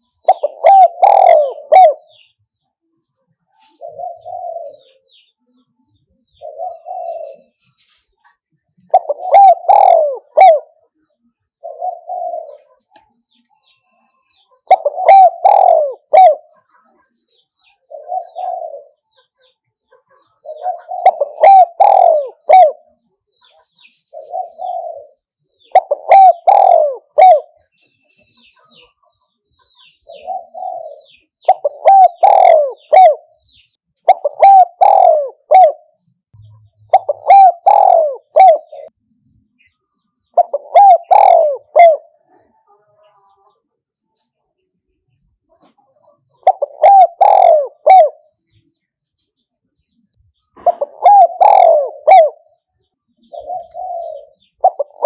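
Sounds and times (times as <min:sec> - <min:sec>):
dove cooing: 0:00.0 - 0:02.3, 0:03.6 - 0:05.1, 0:06.3 - 0:07.6, 0:08.8 - 0:10.9, 0:11.6 - 0:13.0, 0:14.6 - 0:16.6, 0:17.9 - 0:19.3, 0:20.1 - 0:23.0, 0:24.1 - 0:27.7, 0:29.8 - 0:39.0, 0:40.3 - 0:42.5, 0:45.6 - 0:48.3, 0:50.6 - 0:52.6, 0:53.2 - 0:55.0.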